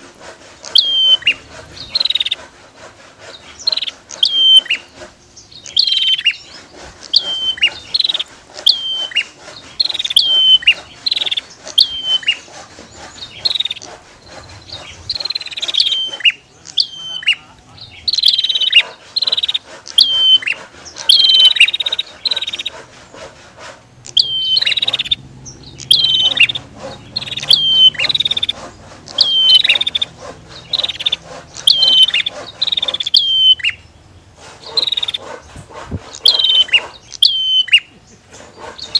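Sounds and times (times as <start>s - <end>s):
bird calling loudly: 0.0s - 38.9s
fast ticking clicks: 18.2s - 33.8s.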